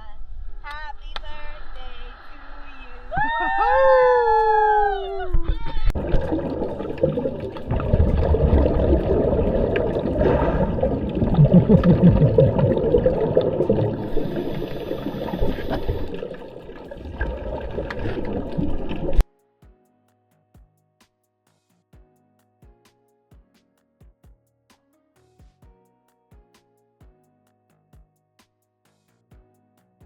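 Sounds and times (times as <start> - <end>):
water rushing and splashing: 5.8 - 19.2.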